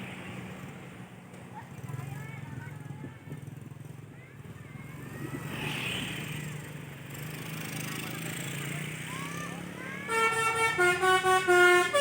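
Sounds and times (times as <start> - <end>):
faint voices: 1.4 - 5.6, 7.4 - 12.0.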